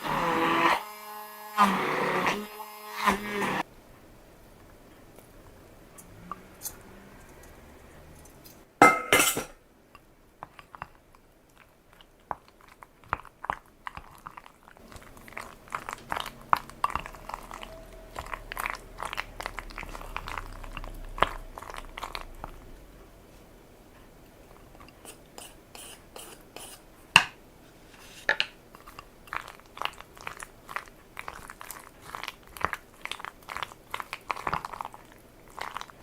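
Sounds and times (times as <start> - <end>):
crunchy chewing: 10.4 - 22.9, 28.8 - 36.0.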